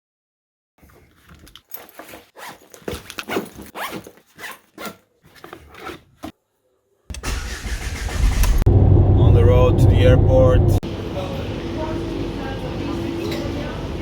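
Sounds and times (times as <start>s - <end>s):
zipper rasping: 1.7s - 6.3s.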